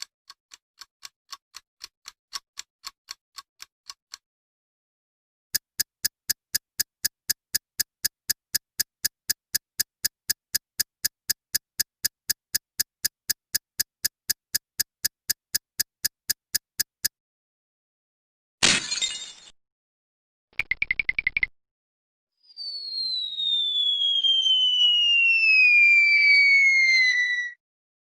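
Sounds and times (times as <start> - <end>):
clock-like ticking: 0.0 - 4.2, 5.6 - 17.2.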